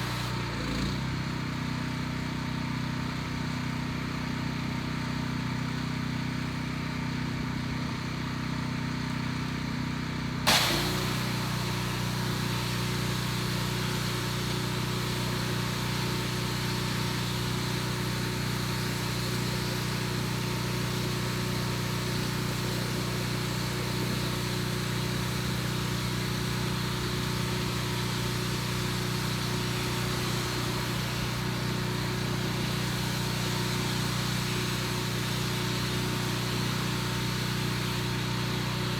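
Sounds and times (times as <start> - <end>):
hiss of spraying water: 0.0 - 0.4, 10.5 - 38.9
pressure washer engine running: 0.0 - 2.4, 10.1 - 38.9.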